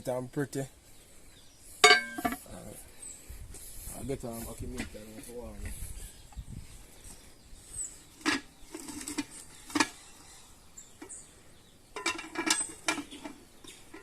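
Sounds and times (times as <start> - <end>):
utensil striking metal pot: 1.8 - 2.4.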